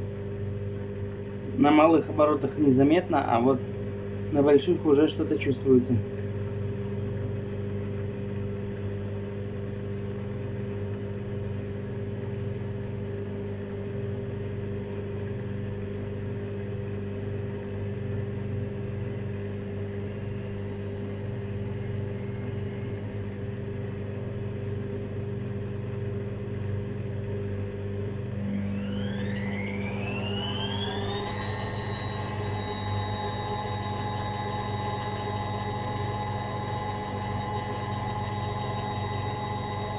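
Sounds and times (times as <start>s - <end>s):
washing machine motor hum: 0.0s - 39.9s
motor whine rising in pitch: 17.4s - 39.9s.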